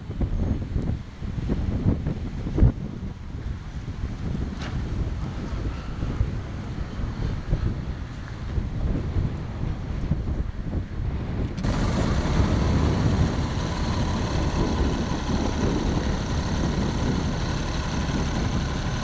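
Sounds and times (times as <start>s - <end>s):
diesel bus engine rumbling: 11.4s - 19.0s.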